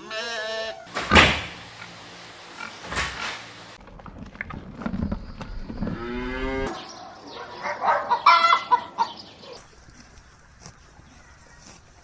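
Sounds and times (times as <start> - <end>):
cow mooing: 0.0 - 0.9
chickens clucking: 5.1 - 12.0.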